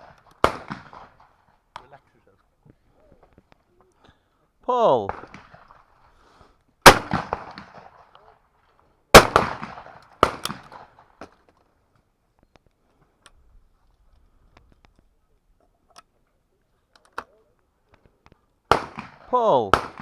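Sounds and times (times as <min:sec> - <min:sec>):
shotgun shot: 0:06.8 - 0:07.9, 0:09.2 - 0:10.7, 0:18.7 - 0:20.0.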